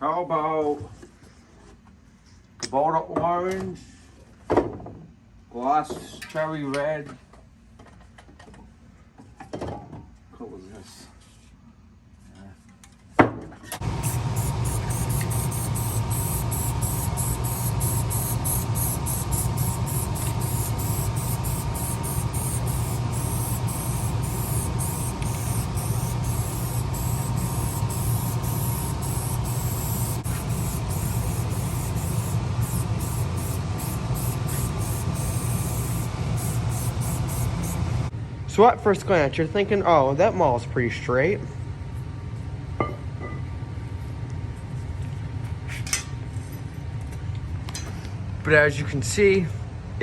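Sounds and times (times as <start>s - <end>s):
spray can hissing: 13.8s - 37.9s.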